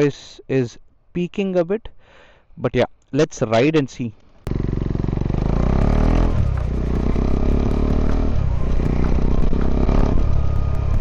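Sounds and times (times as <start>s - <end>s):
motorcycle engine running: 4.5s - 11.0s
wind rushing noise: 5.8s - 11.0s.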